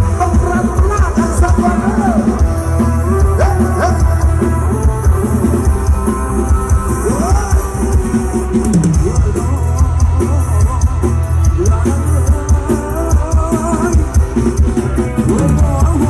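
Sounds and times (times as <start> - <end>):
drum beat: 0.0 - 16.0
heavy bass: 0.0 - 16.0
person singing melody: 0.0 - 16.0.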